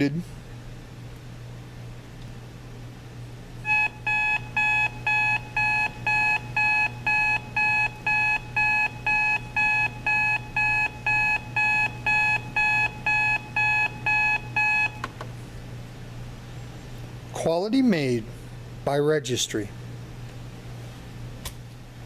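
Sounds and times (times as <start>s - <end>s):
low steady hum: 0.0s - 22.0s
alarm clock beeping: 3.7s - 15.0s.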